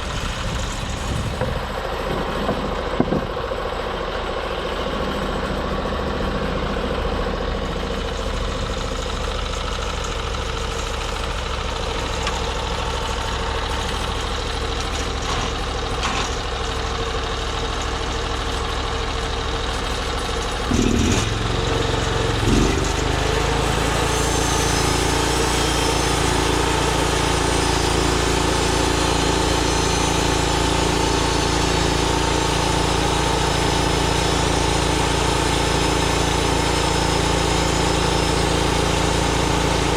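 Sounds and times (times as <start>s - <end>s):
small gasoline engine running: 0.0s - 39.9s
loud thumps: 1.1s - 3.4s.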